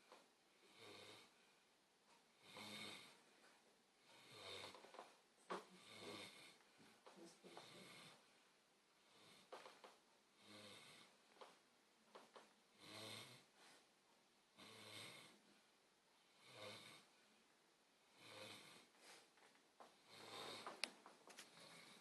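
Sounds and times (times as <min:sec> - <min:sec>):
pet snoring softly: 0:00.6 - 0:01.4, 0:02.4 - 0:03.2, 0:04.0 - 0:08.3, 0:10.4 - 0:11.2, 0:12.8 - 0:13.8, 0:14.6 - 0:15.4, 0:16.3 - 0:17.1, 0:18.1 - 0:19.3, 0:19.9 - 0:22.0.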